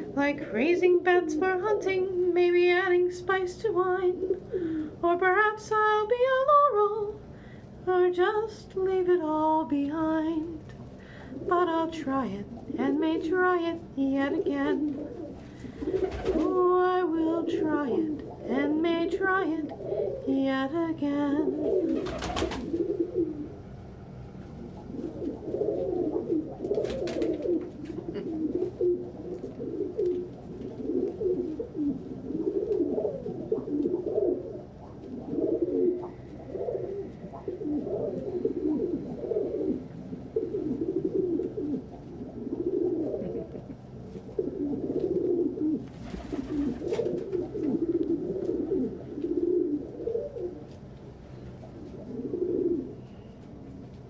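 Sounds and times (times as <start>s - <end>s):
pigeons cooing: 0.0s - 3.0s, 3.7s - 5.1s, 10.5s - 54.0s
rustle: 24.4s - 54.0s.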